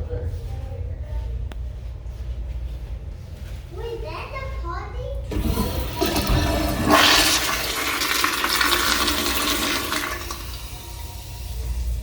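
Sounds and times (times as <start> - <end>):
toilet flushing: 5.3 - 12.0.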